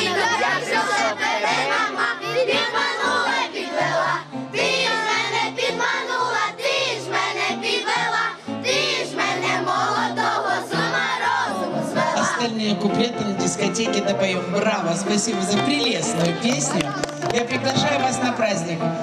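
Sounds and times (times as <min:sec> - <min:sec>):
children singing in unison: 0:00.0 - 0:12.5.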